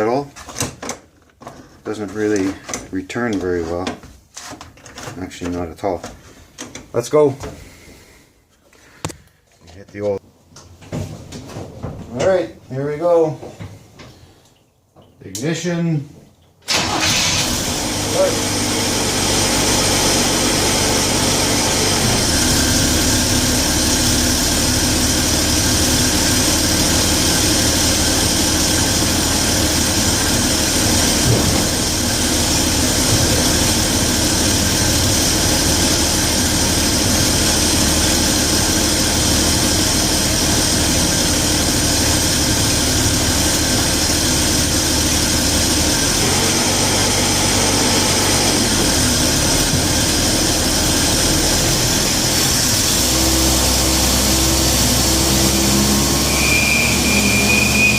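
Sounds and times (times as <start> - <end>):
van engine rumbling: 16.7 - 57.9.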